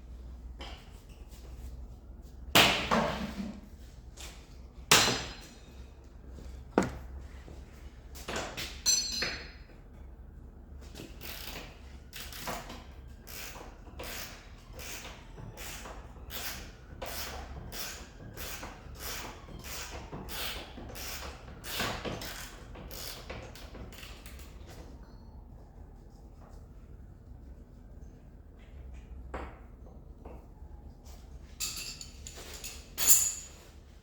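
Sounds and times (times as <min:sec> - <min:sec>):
metallic clink: 0:31.6 - 0:33.6.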